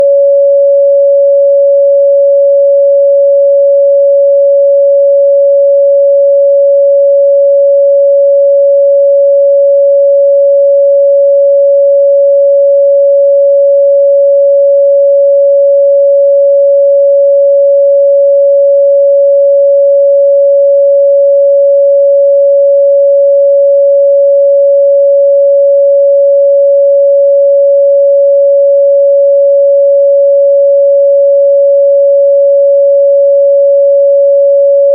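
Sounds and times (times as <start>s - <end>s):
sine wave test tone: 0.0s - 34.9s.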